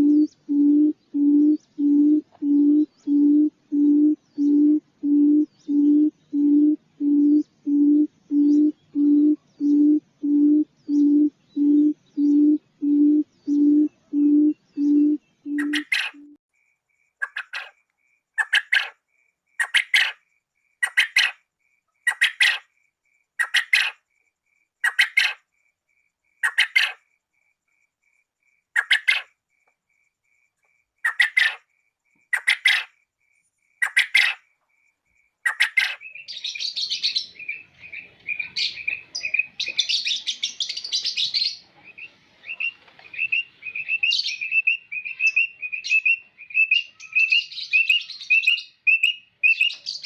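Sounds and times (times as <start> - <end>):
quail low hooting: 0.0 - 16.4
quail scratchy calls: 12.9 - 16.4, 17.2 - 17.8, 18.4 - 19.0, 19.6 - 20.2, 20.8 - 21.4, 22.1 - 22.6, 23.4 - 24.0, 24.8 - 25.4, 26.4 - 27.0, 28.8 - 29.3, 31.0 - 31.6, 32.3 - 32.9, 33.8 - 34.4, 35.4 - 36.1.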